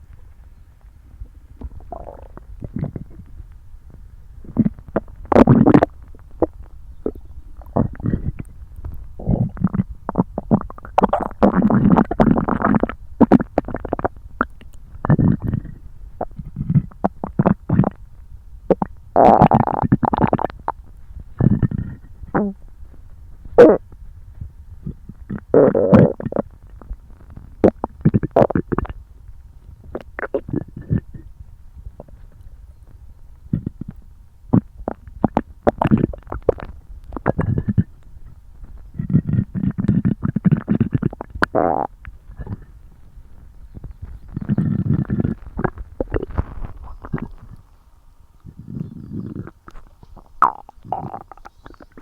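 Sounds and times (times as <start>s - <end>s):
stomach gurgling: 1.1s - 47.8s, 48.4s - 52.0s.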